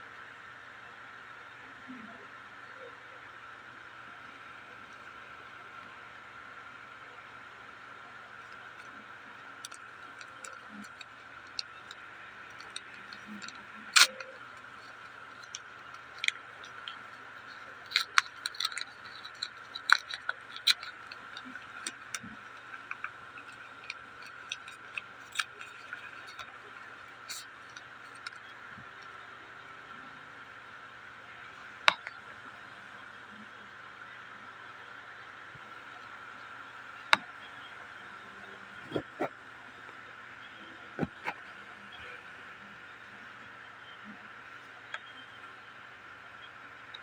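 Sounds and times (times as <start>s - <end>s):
trading cards and packaging handled: 8.4s - 29.1s.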